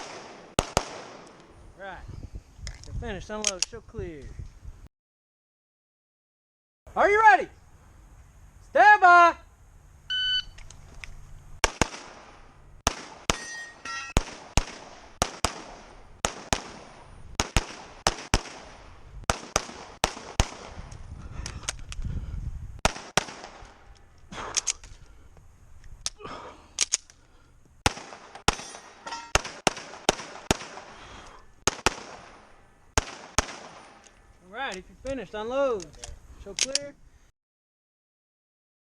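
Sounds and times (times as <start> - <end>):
gunshots: 0.0 - 1.4, 11.6 - 20.8, 22.8 - 23.8, 27.8 - 34.0.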